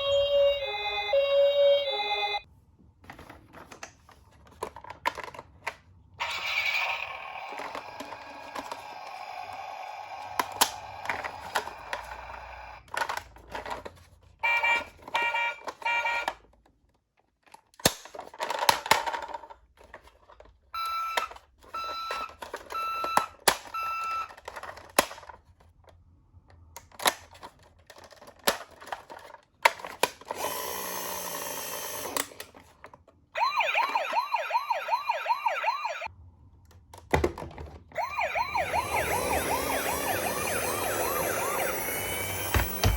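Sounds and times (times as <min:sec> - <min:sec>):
electronic ambulance siren: 0:00.0 - 0:02.5, 0:33.4 - 0:36.1, 0:38.0 - 0:42.9
electronic toy beeps: 0:20.8 - 0:24.4.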